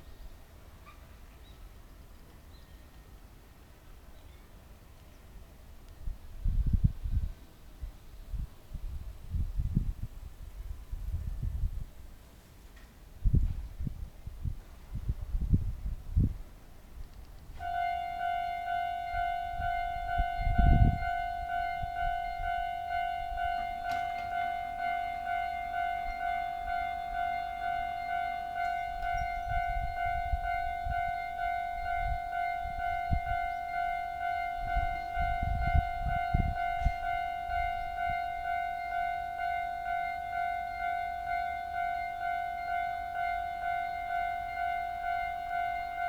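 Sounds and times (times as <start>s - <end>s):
level crossing warning bell: 17.6s - 46.0s.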